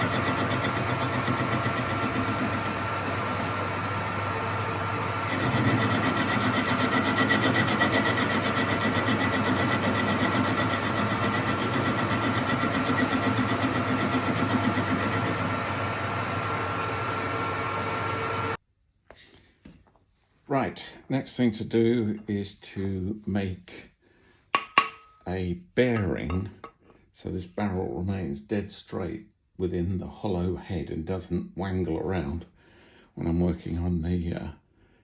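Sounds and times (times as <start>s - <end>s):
metal lathe humming and whining: 0.0s - 18.6s.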